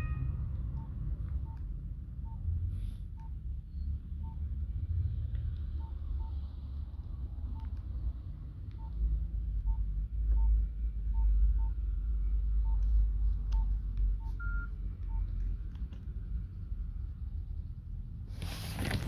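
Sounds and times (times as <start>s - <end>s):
phone keypad beeps: 0.0s - 1.6s, 13.6s - 15.2s.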